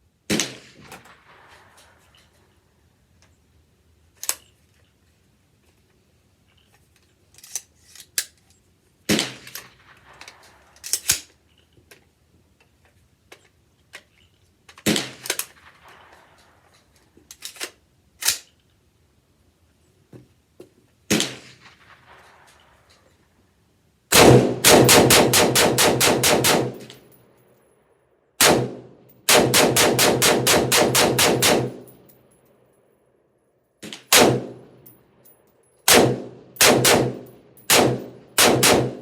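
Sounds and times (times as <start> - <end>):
rifle shots: 0.3 - 2.2, 9.1 - 11.1, 14.8 - 16.6, 21.1 - 22.6, 24.1 - 27.1, 28.4 - 32.1, 33.8 - 34.9, 35.9 - 39.0.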